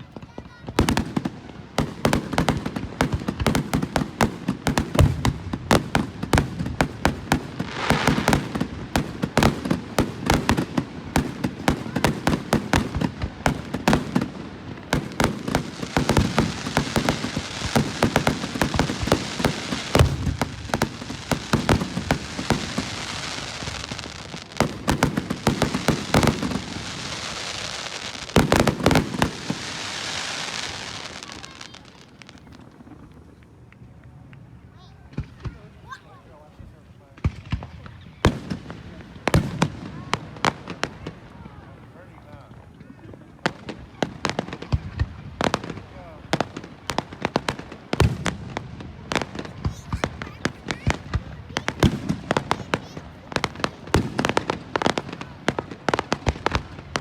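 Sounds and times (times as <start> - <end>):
fireworks bangs and pops: 0.0 - 57.0
fireworks crackling: 0.0 - 57.0.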